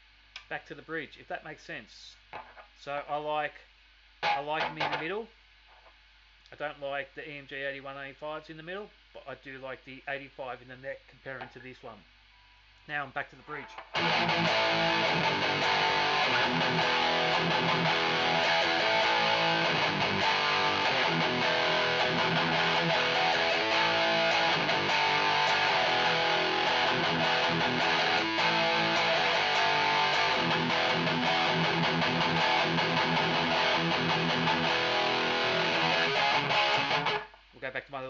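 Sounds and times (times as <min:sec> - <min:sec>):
distorted electric guitar riffs: 0:04.2 - 0:05.2, 0:13.4 - 0:37.5.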